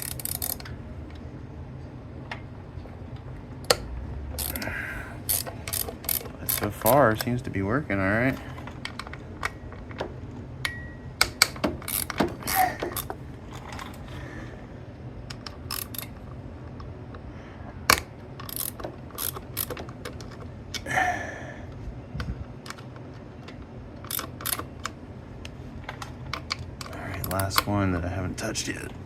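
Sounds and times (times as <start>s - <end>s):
ratchet wrench clicking: 0.0s - 0.7s, 4.4s - 7.4s, 11.2s - 13.2s, 15.3s - 16.2s, 17.9s - 20.4s, 24.0s - 24.9s
ringing metal clink: 10.7s - 11.1s.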